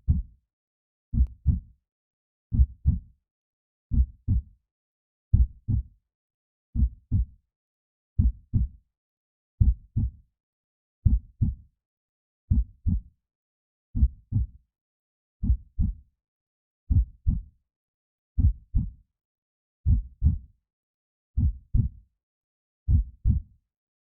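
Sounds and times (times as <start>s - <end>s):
heartbeat double thump: 19.9s - 20.4s.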